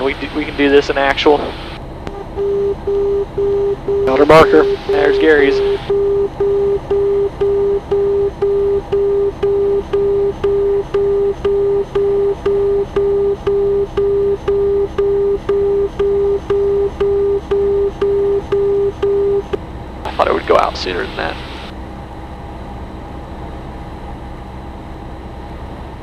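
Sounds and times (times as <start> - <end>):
aircraft engine drone: 0.0 - 26.0
low-pitched beacon dashes: 2.2 - 19.5.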